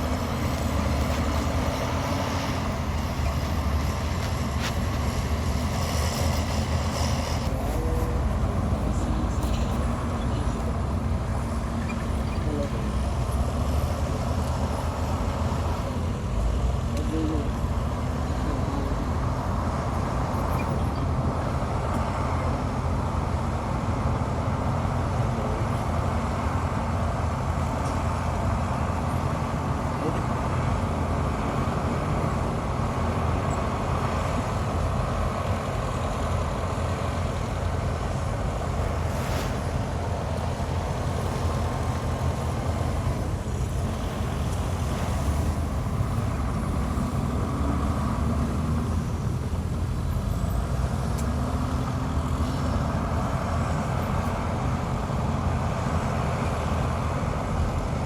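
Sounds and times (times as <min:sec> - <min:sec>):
heavy diesel machinery engine drone: 0:00.0 - 0:58.0.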